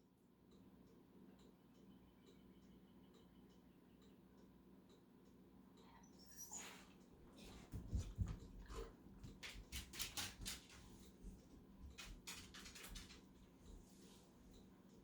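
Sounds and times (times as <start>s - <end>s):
low thumps of dog moving: 7.4s - 11.4s
dog scuffling: 7.4s - 13.8s.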